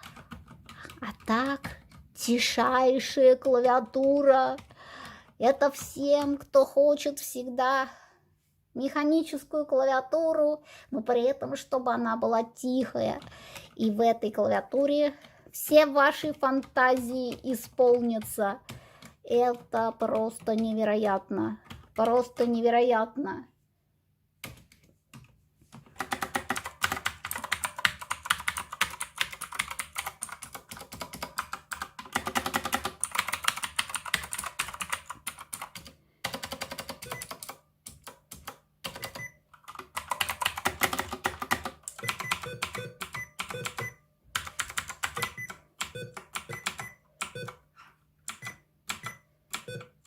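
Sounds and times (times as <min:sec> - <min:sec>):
mechanical keyboard typing: 0:00.0 - 0:06.5, 0:15.2 - 0:22.5, 0:25.9 - 0:47.6.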